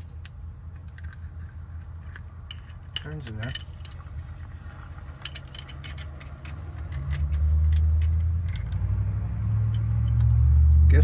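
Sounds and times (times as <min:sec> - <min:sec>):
low mechanical hum: 0:00.0 - 0:11.0
metallic clicks of key and lock: 0:05.2 - 0:08.8.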